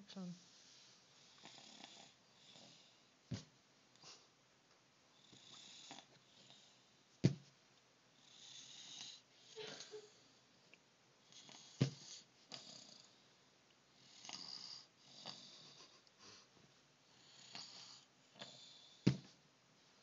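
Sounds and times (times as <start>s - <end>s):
short sharp thumps: 19.1s - 19.3s.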